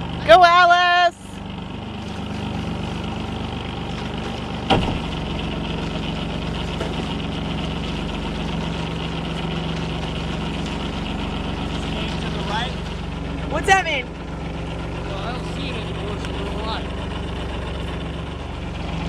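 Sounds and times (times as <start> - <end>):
boat engine humming: 0.0 - 19.0
loud knock: 4.7 - 5.1.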